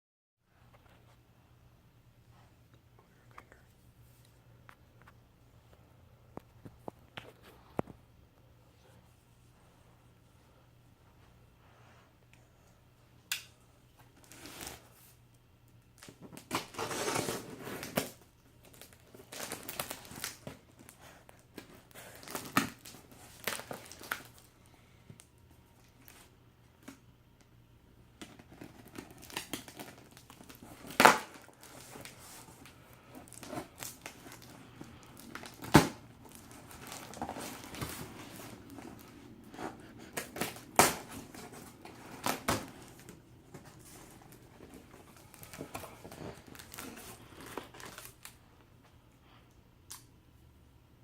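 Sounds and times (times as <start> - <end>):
packaging crinkling and tearing: 16.0 - 24.5, 28.2 - 48.4.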